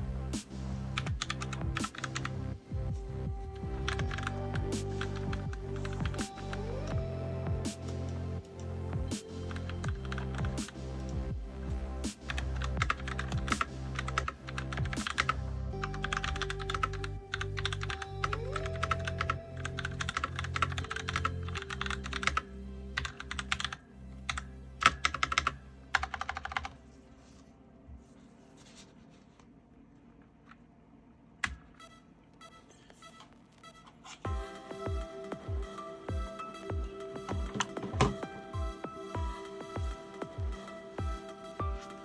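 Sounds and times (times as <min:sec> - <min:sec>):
background music: 0:00.0 - 0:42.0
fast mechanical keyboard typing: 0:01.0 - 0:02.4, 0:03.9 - 0:04.4, 0:09.5 - 0:10.6, 0:12.3 - 0:22.4, 0:23.0 - 0:26.8.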